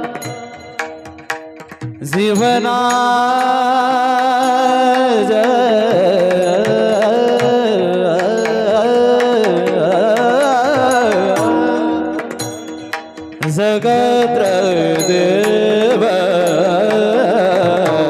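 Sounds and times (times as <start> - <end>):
hand drum accompaniment: 0.0 - 18.0
man singing long high note: 2.1 - 12.5.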